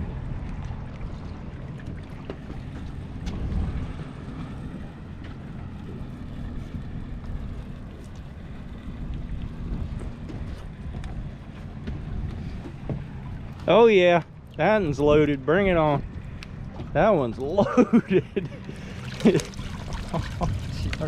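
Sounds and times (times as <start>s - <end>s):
boat engine running: 0.0s - 21.0s
wind noise on microphone: 3.0s - 4.8s, 8.5s - 13.1s, 20.1s - 21.0s.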